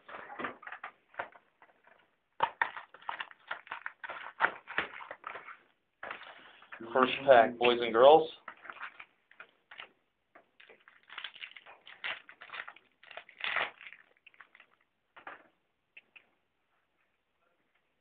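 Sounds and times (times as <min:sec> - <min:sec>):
wrapper tearing and crinkling: 0:02.4 - 0:06.2, 0:08.5 - 0:10.0, 0:10.6 - 0:14.9.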